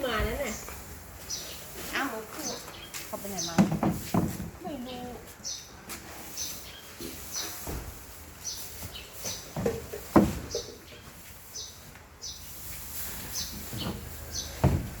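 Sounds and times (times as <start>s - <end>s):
loud knocks: 3.6s - 4.5s, 14.6s - 15.0s
bird chirping: 8.4s - 9.6s, 10.4s - 12.6s, 13.2s - 14.7s.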